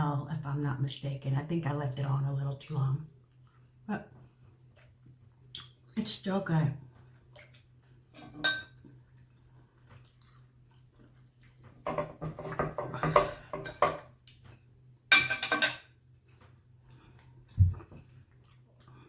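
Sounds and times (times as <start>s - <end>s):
cutlery clinking on a plate: 8.2s - 8.8s, 11.9s - 14.4s, 15.1s - 15.9s.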